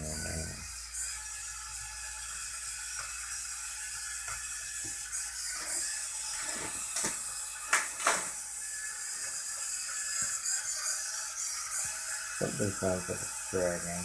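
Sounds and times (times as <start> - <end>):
person talking: 0.0 - 0.6, 12.4 - 14.0
small gear motors whining: 0.0 - 14.0.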